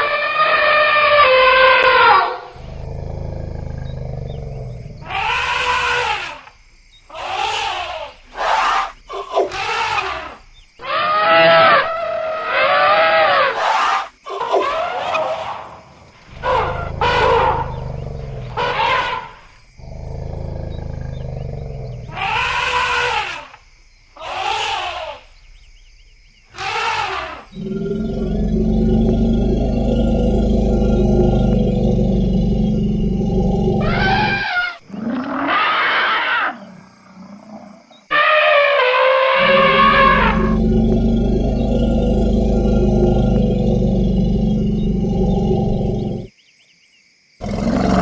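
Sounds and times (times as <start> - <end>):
deep low rumbling: 2.6 - 5.1, 16.3 - 18.8, 27.6 - 34.4, 39.5 - 46.3
elephants trumpeting: 16.3 - 23.5, 26.6 - 36.6, 38.1 - 46.2.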